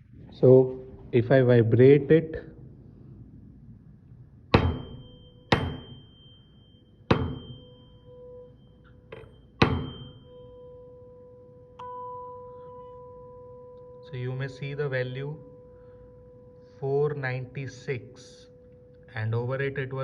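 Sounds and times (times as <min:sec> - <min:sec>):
tuning fork ringing: 0:04.4 - 0:20.0
sharp knock: 0:04.5 - 0:06.1, 0:07.1 - 0:07.7, 0:09.1 - 0:10.2.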